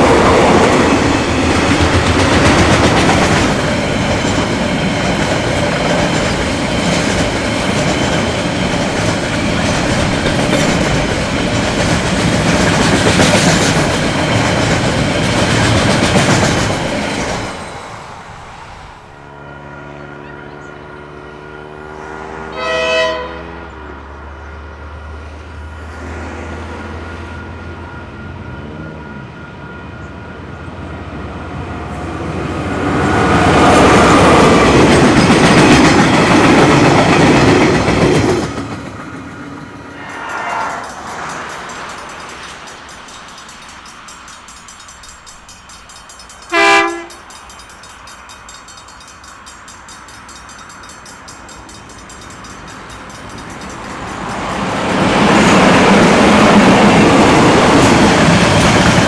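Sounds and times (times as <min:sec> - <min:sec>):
train passing: 0:00.0 - 0:59.0
train horn blast: 0:19.2 - 0:24.3, 0:46.5 - 0:47.3.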